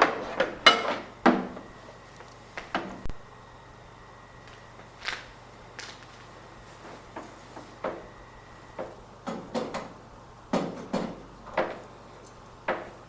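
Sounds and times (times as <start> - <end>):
objects knocking and clunking: 0.0 - 1.7, 8.8 - 11.9, 12.6 - 13.0.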